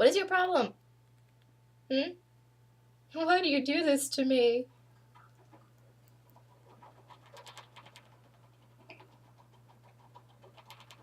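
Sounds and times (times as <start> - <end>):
hamster gnawing on metal bars: 6.2 - 11.0.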